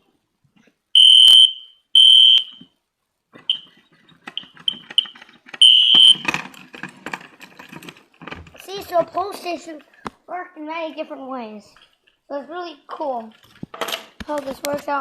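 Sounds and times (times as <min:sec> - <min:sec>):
fire alarm horn blasts: 0:01.0 - 0:02.6, 0:05.6 - 0:06.2.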